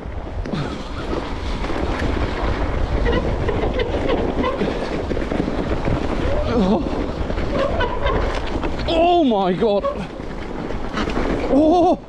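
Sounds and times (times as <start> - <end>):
mountain bike rumble and rattle: 0.0 - 12.0
wind buffeting microphone: 0.0 - 12.0.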